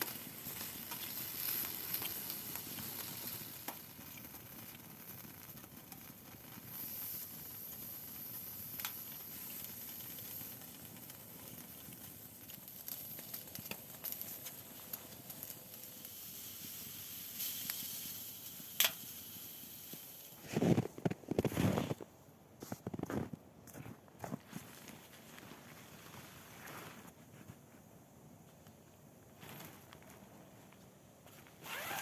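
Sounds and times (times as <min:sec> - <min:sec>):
meat sizzling in a pan: 0:00.0 - 0:20.4.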